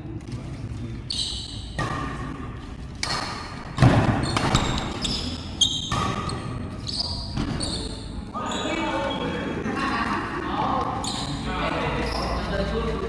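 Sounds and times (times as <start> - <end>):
shoes squeaking on court floor: 1.0 - 2.2, 4.1 - 9.3, 10.8 - 13.0
racket hitting shuttlecock: 3.0 - 5.0, 5.8 - 6.4.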